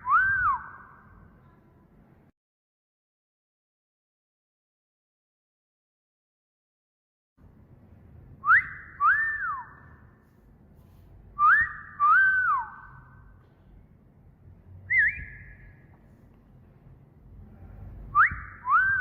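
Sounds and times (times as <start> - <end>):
wolf whistles: 0.0 - 0.9, 8.4 - 9.9, 11.4 - 13.0, 14.9 - 15.7, 18.1 - 19.0
short rising whistle: 8.4 - 10.0, 11.4 - 13.0, 14.9 - 15.8, 18.1 - 19.0.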